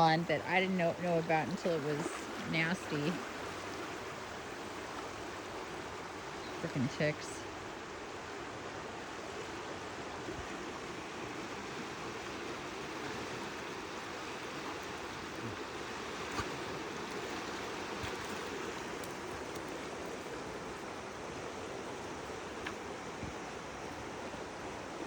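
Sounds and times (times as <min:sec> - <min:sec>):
river water flowing over rocks: 0:00.0 - 0:25.0.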